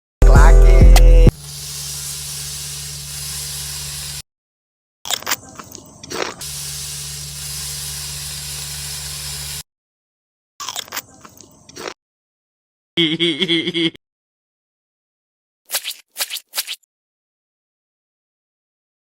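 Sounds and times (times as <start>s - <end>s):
steady hiss: 1.3s - 4.2s, 6.4s - 9.6s.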